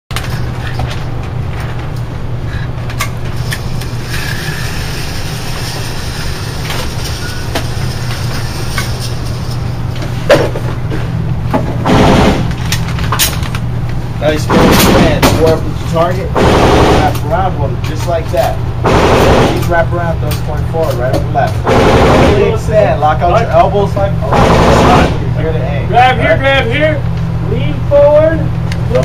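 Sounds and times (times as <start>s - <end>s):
steady low hum: 0.1s - 29.0s.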